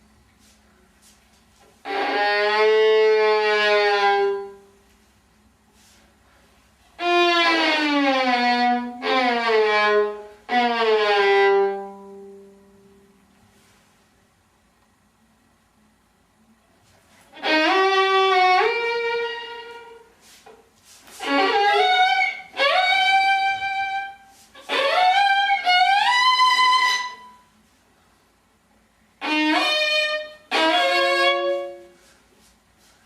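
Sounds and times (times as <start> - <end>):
bowed violin-like melody: 1.8 - 4.8, 7.0 - 12.8, 17.3 - 20.2, 21.2 - 27.5, 29.2 - 32.1.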